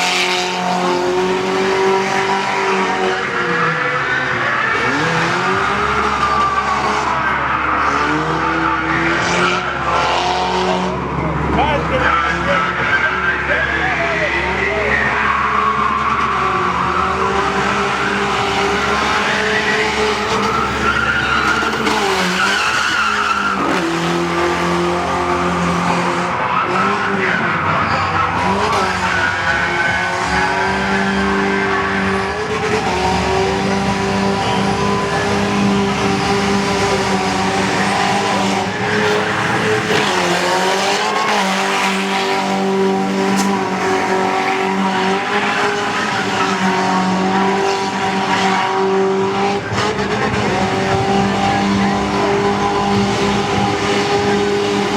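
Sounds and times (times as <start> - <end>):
car engine revving: 0.0 - 54.9
tyres squealing: 14.9 - 46.7.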